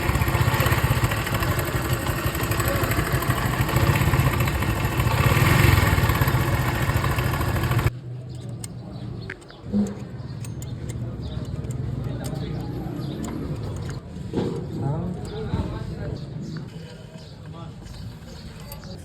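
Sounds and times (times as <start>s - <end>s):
motorcycle engine running: 0.0s - 7.9s.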